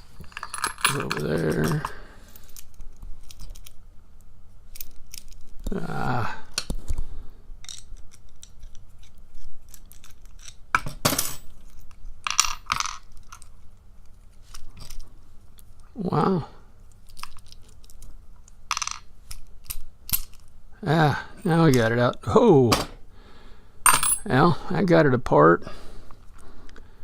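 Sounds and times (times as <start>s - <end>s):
padlock parts clicking and clinking: 0.2s - 5.7s, 7.6s - 15.7s, 16.9s - 20.6s.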